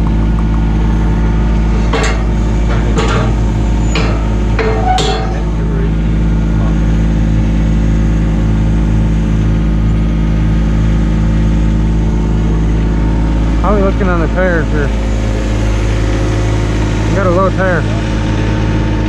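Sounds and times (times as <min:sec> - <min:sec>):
excavator engine idling: 0:00.0 - 0:19.0
metal clanks: 0:01.1 - 0:06.8.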